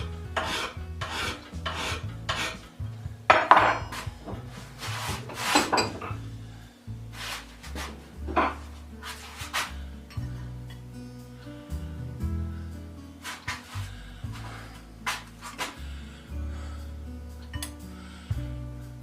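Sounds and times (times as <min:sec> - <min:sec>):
file rasping across metal: 0:00.0 - 0:02.7
faint music: 0:00.0 - 0:19.0
metal clinks and scrapes: 0:03.3 - 0:06.2.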